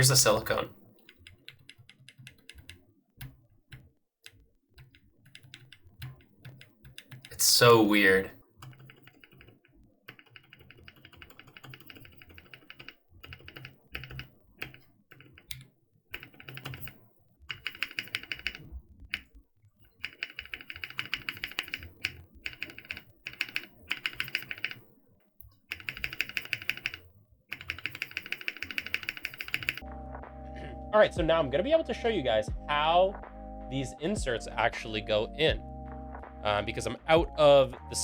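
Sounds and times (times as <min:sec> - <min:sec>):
mechanical keyboard typing: 0:00.0 - 0:03.9, 0:04.8 - 0:19.3, 0:19.9 - 0:24.8, 0:25.7 - 0:29.8.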